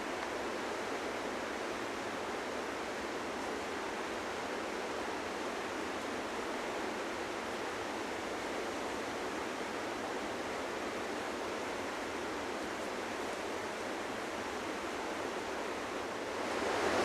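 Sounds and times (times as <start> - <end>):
river rapids rushing: 0.0 - 17.0.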